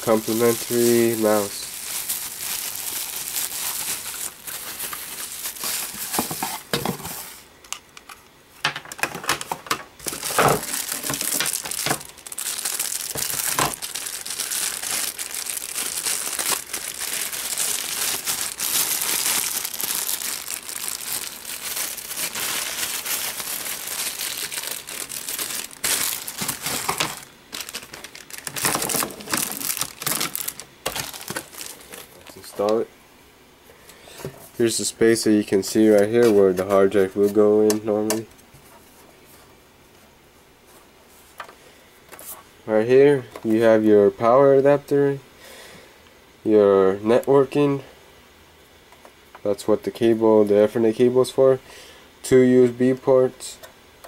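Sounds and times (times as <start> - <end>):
plastic packaging crinkling: 0.0 - 7.4, 9.0 - 32.8.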